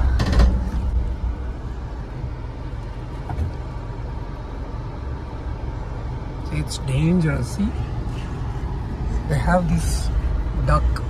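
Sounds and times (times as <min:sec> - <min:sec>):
vehicle engine rumble from inside: 0:00.0 - 0:11.0.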